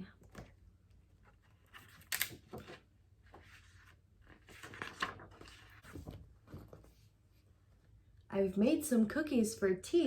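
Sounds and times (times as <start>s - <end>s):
book pages turning: 1.2s - 7.0s.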